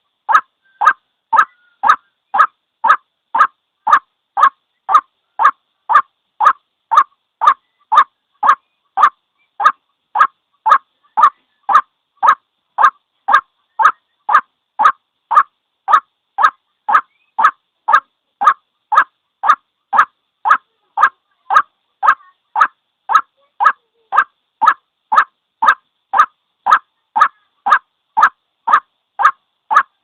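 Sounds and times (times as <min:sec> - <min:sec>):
waterhen call: 0:00.3 - 0:30.0.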